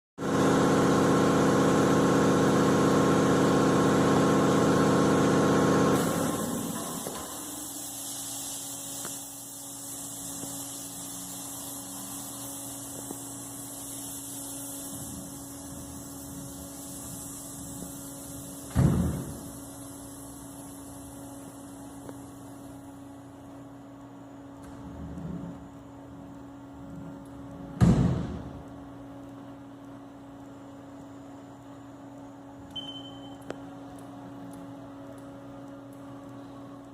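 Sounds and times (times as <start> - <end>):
heavy thud: 18.7 - 19.4, 27.8 - 28.5.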